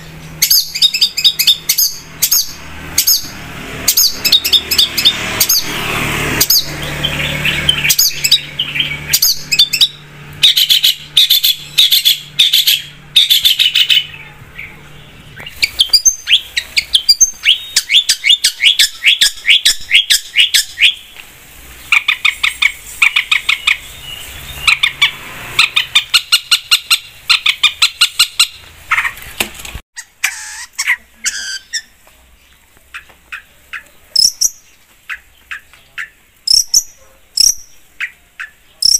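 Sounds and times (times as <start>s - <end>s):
bird singing sharp chirps: 0.0s - 21.2s, 21.8s - 29.1s.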